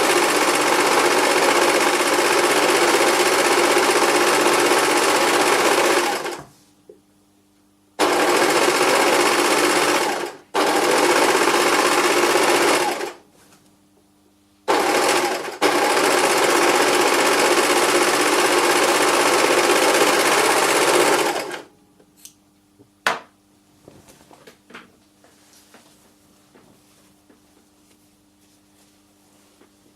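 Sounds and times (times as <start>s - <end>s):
sewing machine stitching: 0.0s - 6.5s, 8.0s - 13.2s, 14.7s - 21.7s.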